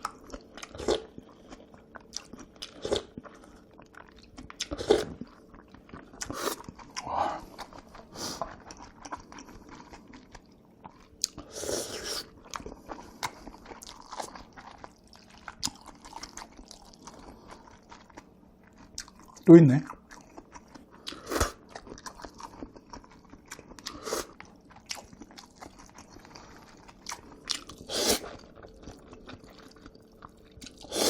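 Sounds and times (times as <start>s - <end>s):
wet chewing and mouth clicks: 0.0s - 31.0s
noodles slurping: 25.0s - 29.9s.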